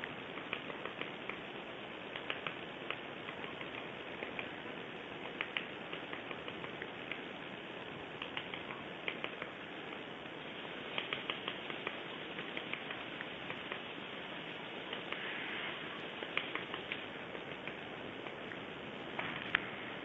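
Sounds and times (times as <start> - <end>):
steady background hiss: 0.0 - 20.0
woodpecker tapping on tree: 0.3 - 1.4, 2.1 - 4.6, 5.2 - 7.2, 8.2 - 10.1, 10.9 - 13.9, 16.2 - 18.4.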